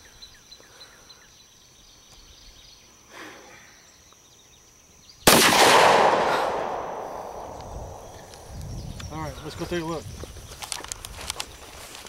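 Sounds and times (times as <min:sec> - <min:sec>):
pistol shot: 0:05.3 - 0:08.4.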